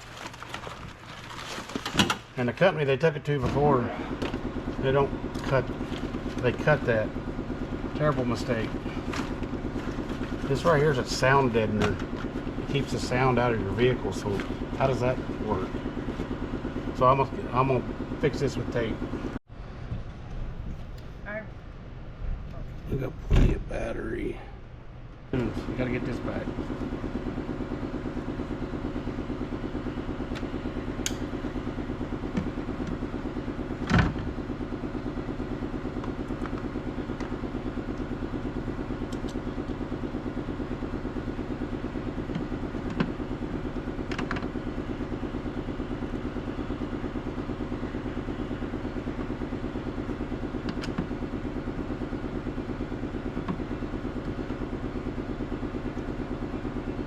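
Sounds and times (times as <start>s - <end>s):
engine idling: 0.0s - 19.4s, 23.0s - 57.0s.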